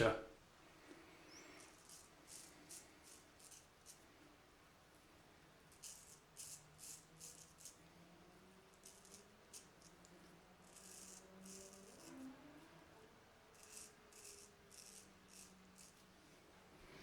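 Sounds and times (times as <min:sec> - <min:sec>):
razor scraping stubble: 0:01.3 - 0:04.0, 0:05.7 - 0:07.8, 0:08.7 - 0:12.2, 0:13.5 - 0:16.0.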